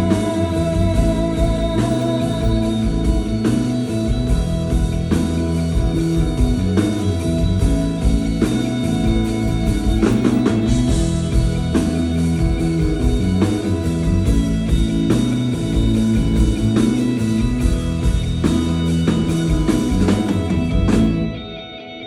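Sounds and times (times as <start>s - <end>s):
electric guitar: 0.0s - 22.0s
live rock band: 0.0s - 22.0s.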